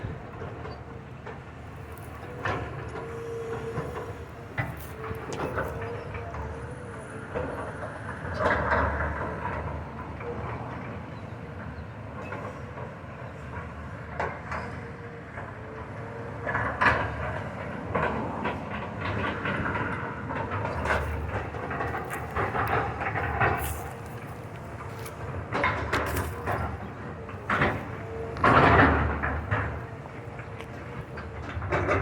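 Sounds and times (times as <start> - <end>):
demolition machinery rumbling: 0.0 - 32.0
debris clanking and crunching: 20.7 - 32.0.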